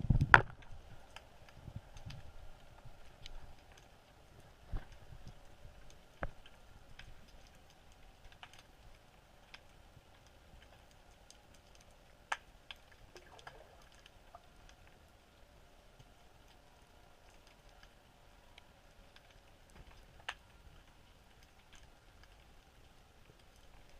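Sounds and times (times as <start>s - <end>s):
faint underwater clicking: 4.8s - 15.0s.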